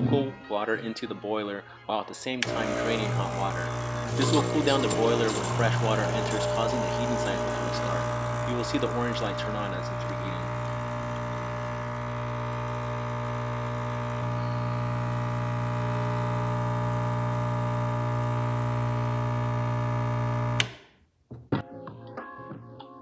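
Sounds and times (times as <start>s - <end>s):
machine switch click: 2.4s - 3.6s, 20.6s - 20.8s
espresso machine pump humming: 2.4s - 20.8s.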